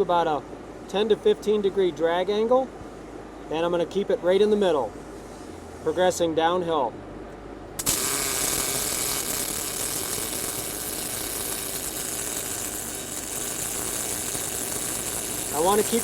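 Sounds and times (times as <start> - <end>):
welding arc hissing: 7.8 - 16.0.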